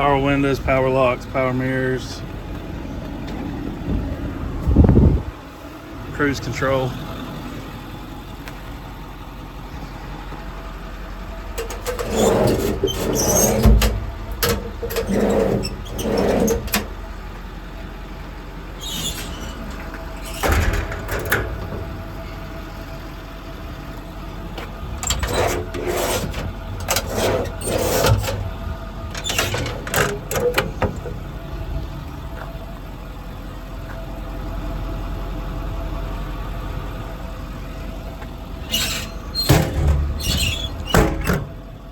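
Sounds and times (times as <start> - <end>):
diesel engine idling: 0.0 - 41.9
knocks and clunks: 11.6 - 17.0, 18.9 - 22.5, 24.6 - 31.3, 38.7 - 41.6.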